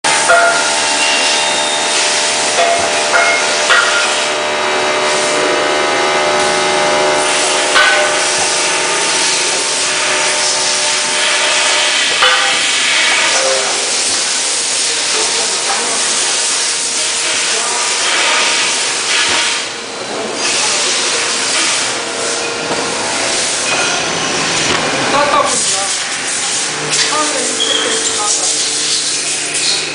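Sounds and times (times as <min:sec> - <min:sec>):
riveting machine hiss and hum: 0:00.0 - 0:29.9
sharp machine clacks: 0:07.2 - 0:14.5.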